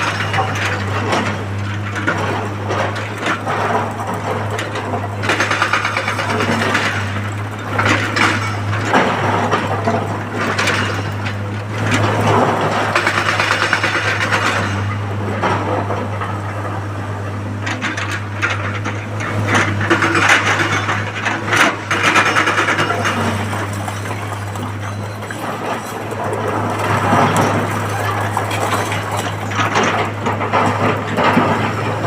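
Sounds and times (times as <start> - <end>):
diesel engine hum: 0.0 - 32.0
rock and earth scraping and clattering: 17.8 - 32.0.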